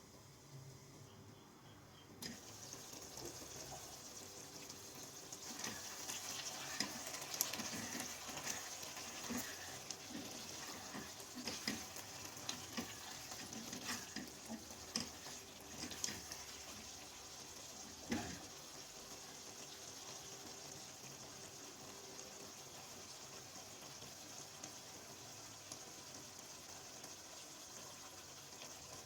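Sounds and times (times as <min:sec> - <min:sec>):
utensil stirring in pan: 0:02.2 - 0:21.6
food sizzling in hot oil: 0:02.2 - 0:29.0.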